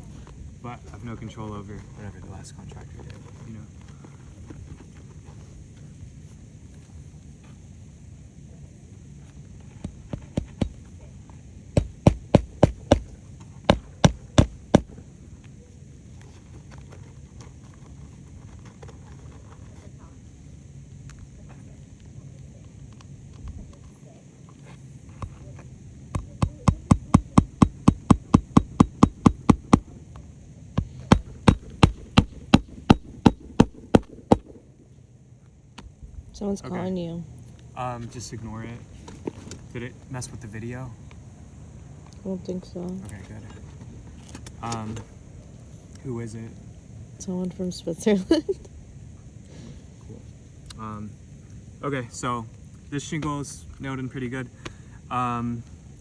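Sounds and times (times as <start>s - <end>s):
hammer driving nails: 9.8s - 10.8s, 11.8s - 13.1s, 13.7s - 14.9s, 26.2s - 29.9s, 30.8s - 34.6s.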